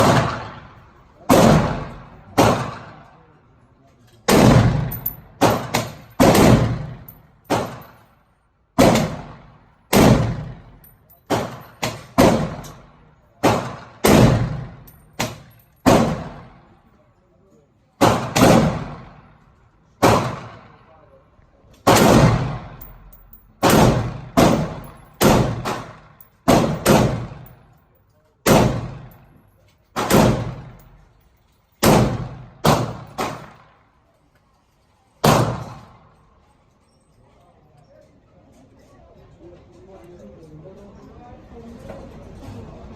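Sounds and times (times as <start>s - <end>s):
rifle gunshots echoing: 0.0s - 3.0s, 4.3s - 7.9s, 8.8s - 16.6s, 18.0s - 19.2s, 20.0s - 20.7s, 21.9s - 27.6s, 28.5s - 29.2s, 30.0s - 31.1s, 31.8s - 33.7s
gunshots with echo: 21.9s - 27.5s, 28.5s - 29.1s, 30.0s - 30.8s.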